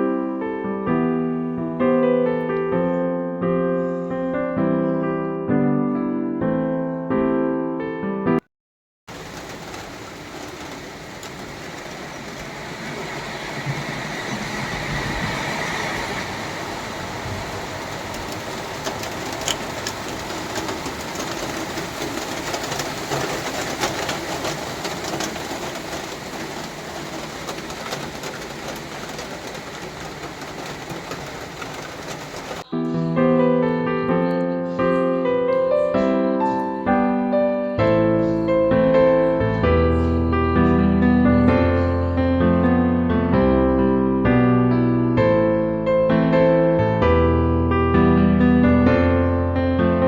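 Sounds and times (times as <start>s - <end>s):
moving vehicle noise: 9.1s - 32.7s
clicks and rattles: 18.1s - 32.6s.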